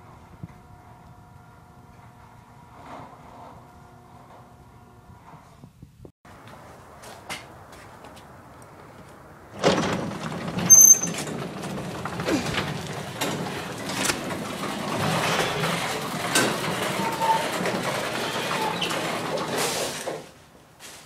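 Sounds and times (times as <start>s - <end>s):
garage door opener running: 0.0s - 5.4s, 9.6s - 20.3s.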